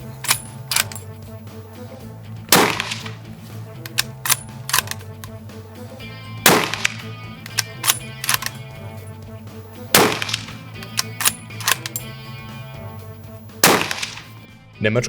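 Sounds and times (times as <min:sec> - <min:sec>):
background music: 0:00.0 - 0:15.0
rifle shots with echo: 0:00.2 - 0:01.1, 0:02.5 - 0:03.2, 0:03.9 - 0:05.3, 0:06.4 - 0:08.9, 0:09.9 - 0:12.2, 0:13.6 - 0:14.4
sharp quiet cracks: 0:02.5 - 0:05.5, 0:06.5 - 0:08.8, 0:10.0 - 0:12.1, 0:13.6 - 0:14.4.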